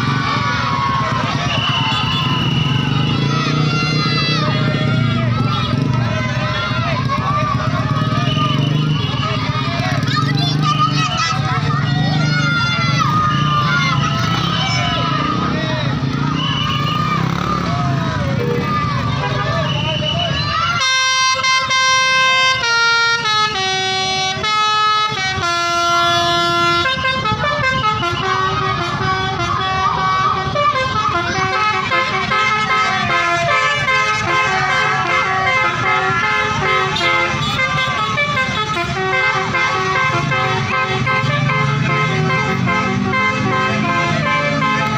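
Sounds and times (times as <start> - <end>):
multi-tone musical air horn: 20.7 - 44.9.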